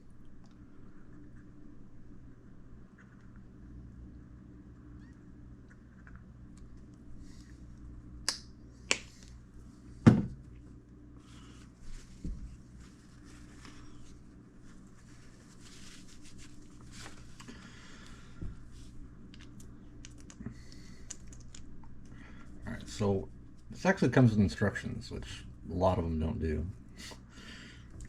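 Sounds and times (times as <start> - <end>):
faint rustling handling noise: 9.1 - 25.1
object set down with knock: 10.0 - 10.4.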